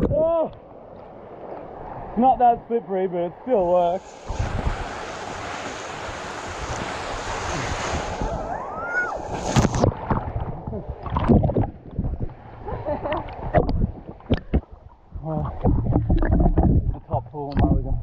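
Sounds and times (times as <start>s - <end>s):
rushing water: 0.0s - 18.0s
splashes and knocks in pool: 9.3s - 12.4s, 13.0s - 18.0s.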